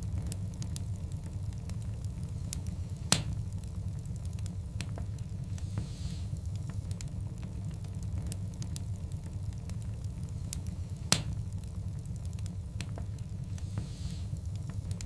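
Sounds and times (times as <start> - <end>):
wood fire rumbling and crackling: 0.0 - 15.0
loud pop from fire: 3.0 - 3.4, 11.0 - 11.4.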